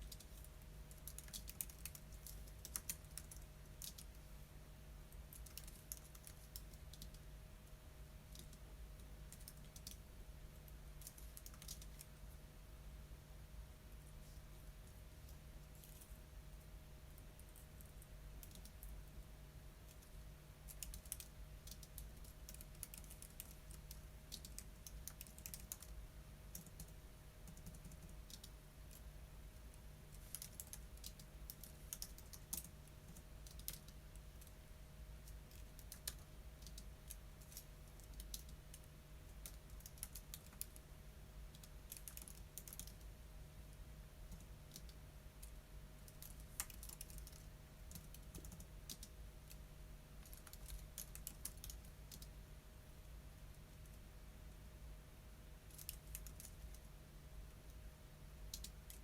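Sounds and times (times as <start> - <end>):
typing on keyboard: 0.0 - 4.2, 5.2 - 7.2, 8.3 - 10.1, 11.0 - 12.2, 17.4 - 18.9, 19.9 - 29.1, 30.1 - 34.6, 35.2 - 40.8, 41.5 - 43.1, 44.3 - 49.6, 50.2 - 52.3, 55.7 - 56.8, 58.5 - 59.0
steady low hum: 0.0 - 59.0.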